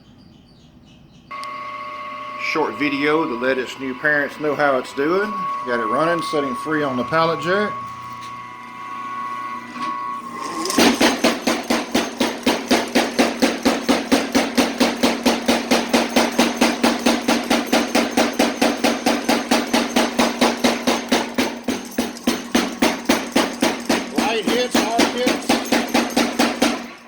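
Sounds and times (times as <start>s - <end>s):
steady mechanical hum: 0.4s - 27.0s
power hammer ram striking: 9.7s - 27.0s.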